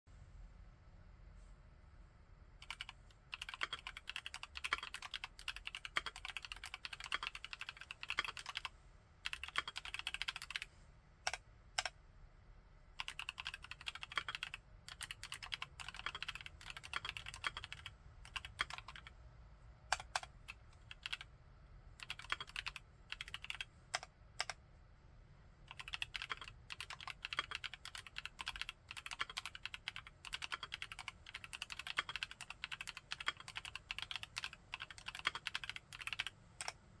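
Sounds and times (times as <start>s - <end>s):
mechanical keyboard typing: 2.6s - 10.7s, 13.0s - 19.1s, 19.9s - 21.3s, 22.0s - 24.6s, 25.7s - 36.8s.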